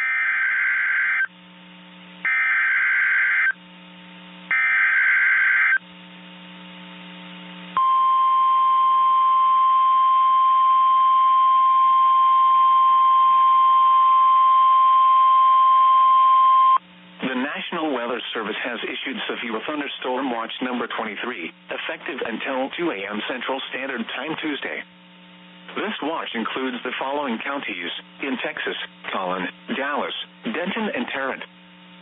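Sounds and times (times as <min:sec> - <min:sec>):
radio hiss and hum: 0:01.0 - 0:02.7, 0:03.3 - 0:07.8, 0:16.8 - 0:32.0
steady warning alarm tone: 0:02.3 - 0:03.6, 0:04.5 - 0:05.8.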